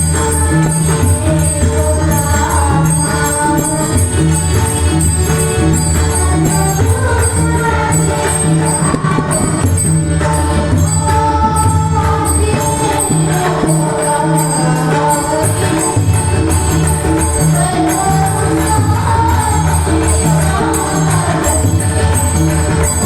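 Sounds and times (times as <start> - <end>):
hand drums: 0.0 - 23.0
jingling percussion: 0.0 - 23.0
woman singing devotional melody: 0.0 - 23.0.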